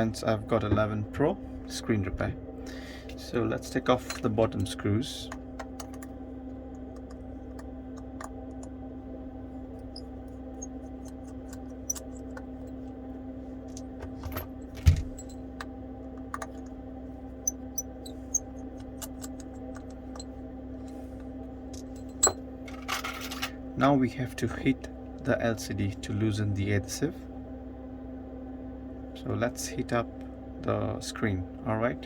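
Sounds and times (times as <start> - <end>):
steady low hum: 0.0 - 32.0
screwdriver and metal parts clicking: 9.8 - 12.8, 13.7 - 15.7, 17.4 - 21.0.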